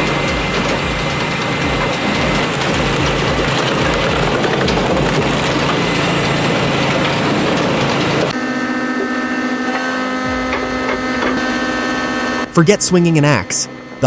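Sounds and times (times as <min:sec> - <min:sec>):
dense mechanical clatter: 0:00.0 - 0:08.4
sharp knocks: 0:00.0 - 0:08.4, 0:09.0 - 0:12.2
engine and hydraulic hum: 0:00.0 - 0:14.0.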